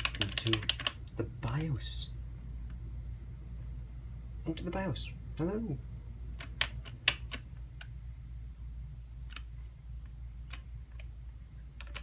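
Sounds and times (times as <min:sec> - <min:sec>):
sharp computer input clicks: 0:00.0 - 0:01.0
steady low hum: 0:00.0 - 0:12.0.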